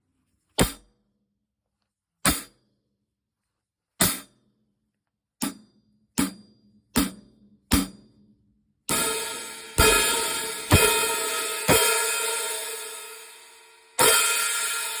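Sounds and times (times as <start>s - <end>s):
closed hi-hat strokes: 8.9s - 15.0s.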